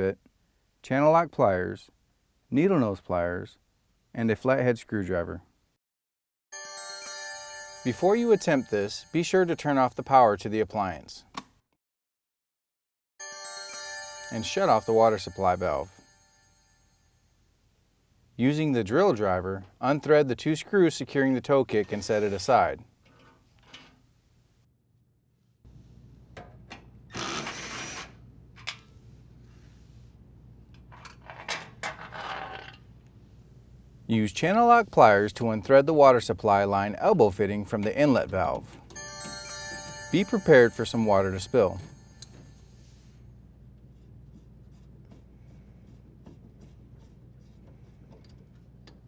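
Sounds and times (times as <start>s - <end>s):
drill driver running: 27.1s - 28.2s.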